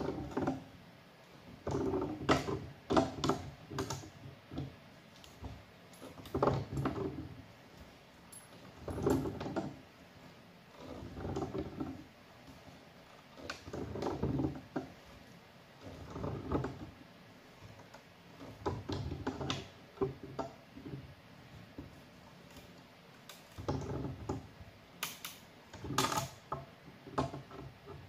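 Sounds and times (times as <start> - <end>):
plastic pipe scraping: 0.0 - 24.7, 25.6 - 28.0
sharp clicks and knocks: 1.6 - 7.3, 17.6 - 28.0.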